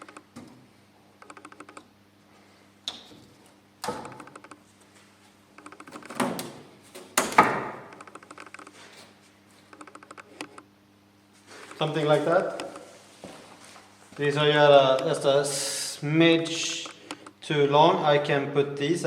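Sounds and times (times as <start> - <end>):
rapid fine clicking: 1.2 - 1.9, 9.7 - 10.7.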